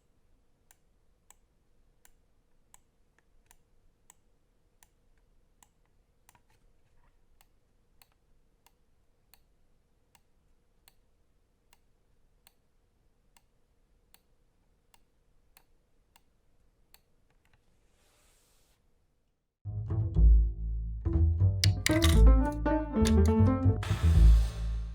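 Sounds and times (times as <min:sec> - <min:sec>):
mouse clicking: 0:00.0 - 0:11.1, 0:11.7 - 0:12.7, 0:13.3 - 0:17.6, 0:21.6 - 0:22.2.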